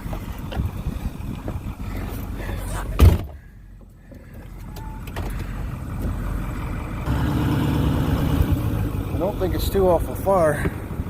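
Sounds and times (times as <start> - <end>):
vehicle engine driving off: 0.0 - 3.5, 4.4 - 11.0.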